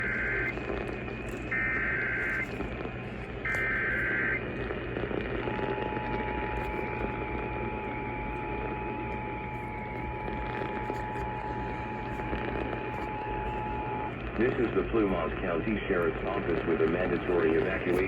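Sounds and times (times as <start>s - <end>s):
buzzy warbling data tone: 0.0s - 2.6s, 3.4s - 4.4s, 5.4s - 14.1s
radio hiss: 0.0s - 18.0s.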